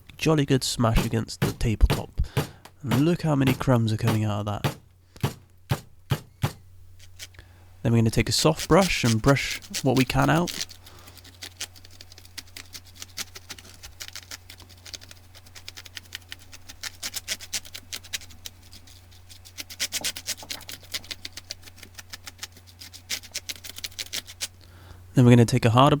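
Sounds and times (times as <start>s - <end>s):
steady low hum: 0.0s - 26.0s
brush sweeping across keyboard keys: 8.2s - 24.4s.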